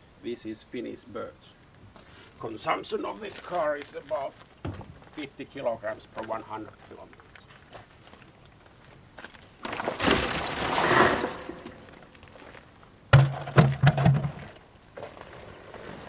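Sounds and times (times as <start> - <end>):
firewood tipped out clattering: 9.6 - 14.6
sharp wooden knocks: 13.1 - 14.5.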